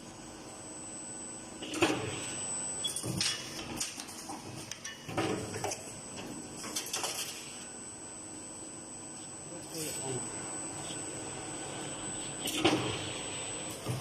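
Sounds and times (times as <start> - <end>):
machine hum with high whine: 0.0 - 14.0
mechanical clanks and rattles: 2.8 - 7.4.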